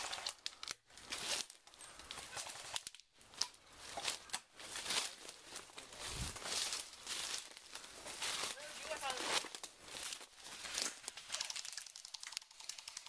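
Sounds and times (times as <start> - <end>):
rustling and crackling: 0.0 - 13.0
sharp clicks: 11.0 - 13.0.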